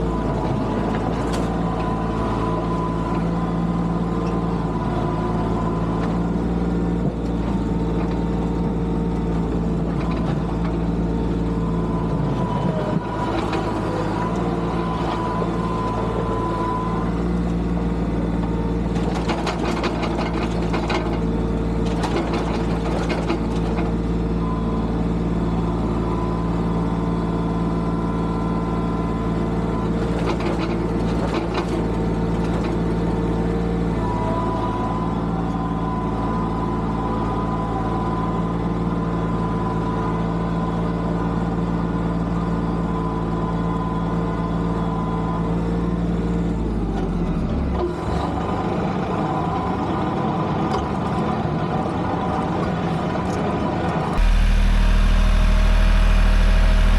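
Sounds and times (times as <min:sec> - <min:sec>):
tractor engine running: 0:00.0 - 0:40.4, 0:54.2 - 0:56.9.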